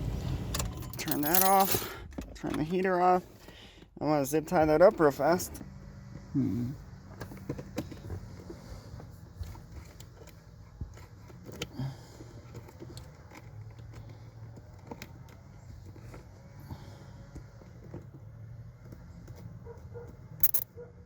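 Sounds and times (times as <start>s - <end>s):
hands handling wiring: 0.9s - 3.1s, 7.1s - 16.6s, 17.2s - 20.6s.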